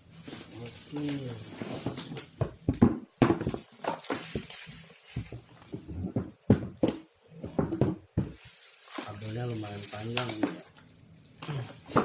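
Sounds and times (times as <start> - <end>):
packaging rustling: 3.4 - 5.9, 8.3 - 10.9.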